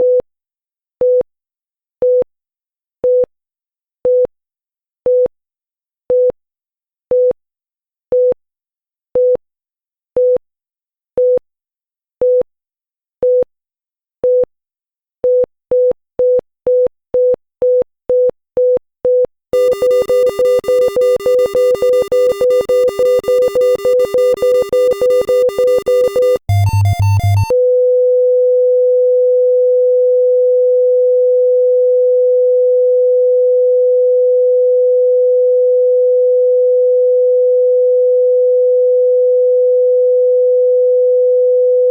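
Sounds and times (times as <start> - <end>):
buzzing alarm tone: 19.6 - 27.5
harsh buzz: 19.6 - 27.5
heart monitor beeping: 19.6 - 27.5
flatline tone: 19.6 - 27.6.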